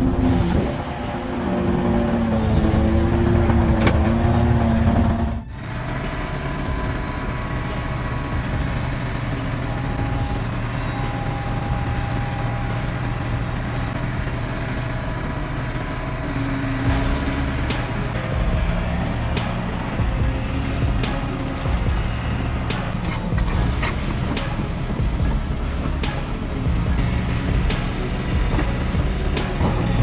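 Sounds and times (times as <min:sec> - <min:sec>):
pitched engine drone: 0:16.8 - 0:30.0
rough low engine rumble: 0:16.9 - 0:30.0.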